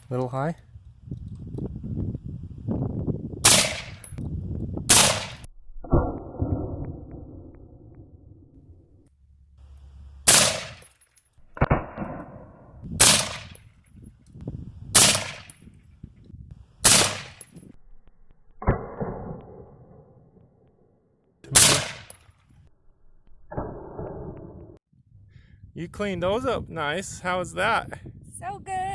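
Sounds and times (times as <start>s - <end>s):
loud gunshots with echo: 3.4s - 4.0s, 4.9s - 5.5s, 10.3s - 10.8s, 11.6s - 13.6s, 21.5s - 22.1s.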